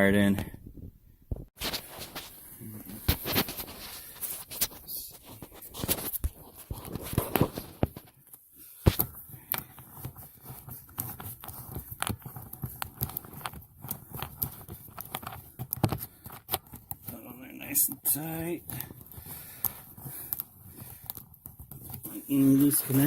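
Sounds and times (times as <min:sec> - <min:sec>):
clicks and taps on wiring: 0:05.8 - 0:22.2.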